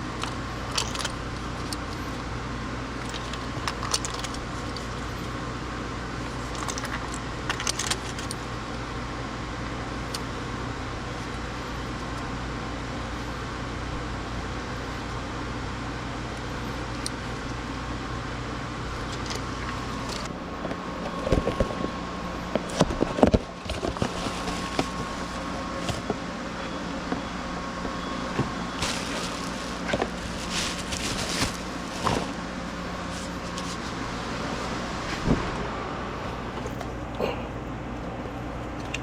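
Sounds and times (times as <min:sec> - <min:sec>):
low mechanical hum: 0:00.0 - 0:39.0
tools clicking and knocking: 0:00.2 - 0:02.0, 0:06.4 - 0:08.4.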